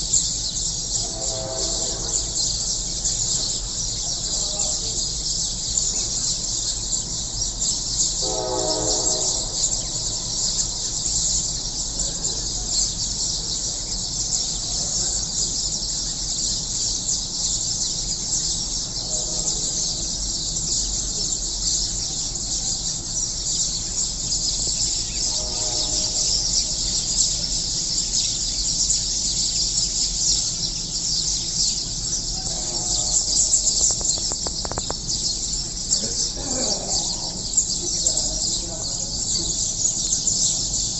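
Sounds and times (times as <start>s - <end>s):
sparrows chirping: 0.0s - 40.9s
low drawn-out bird call: 0.3s - 15.7s, 18.4s - 40.9s.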